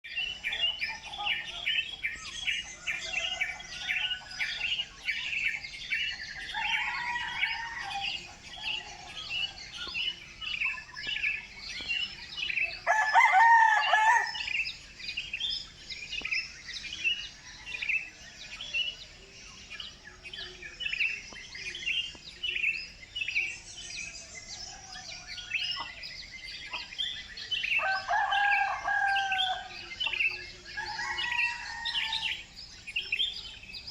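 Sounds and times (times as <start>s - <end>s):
small birds chirping: 0.0s - 33.9s
rooster crowing: 2.8s - 5.0s, 6.4s - 10.0s, 12.8s - 14.6s, 27.7s - 32.5s.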